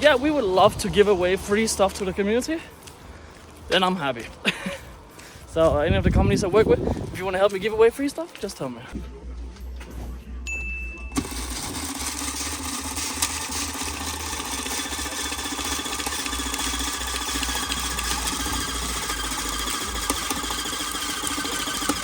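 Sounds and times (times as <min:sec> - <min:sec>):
short high steady tone: 0:10.4 - 0:11.6
engine running: 0:11.1 - 0:22.0.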